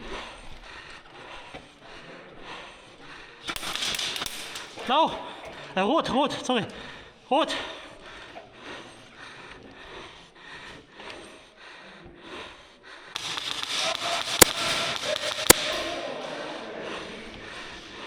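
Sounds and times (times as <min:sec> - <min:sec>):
faint rhythmic breathing: 0:00.0 - 0:05.6, 0:11.5 - 0:16.0
airsoft gun shots: 0:03.5 - 0:05.3, 0:13.2 - 0:16.0.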